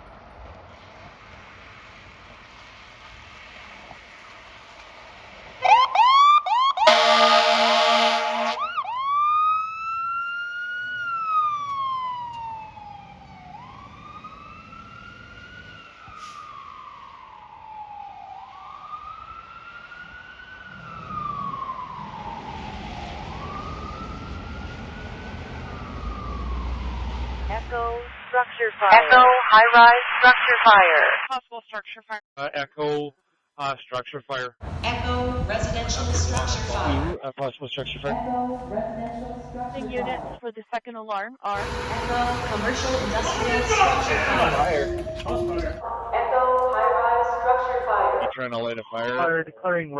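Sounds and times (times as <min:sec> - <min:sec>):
siren yelping and wailing: 0:05.6 - 0:28.2, 0:34.8 - 0:37.2, 0:41.5 - 0:49.4
air horn blast: 0:06.8 - 0:08.7, 0:41.6 - 0:46.4.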